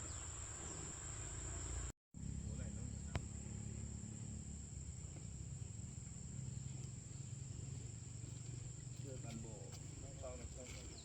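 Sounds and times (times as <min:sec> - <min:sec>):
insects chirring: 0:00.0 - 0:11.0
low steady rumble: 0:00.1 - 0:10.8.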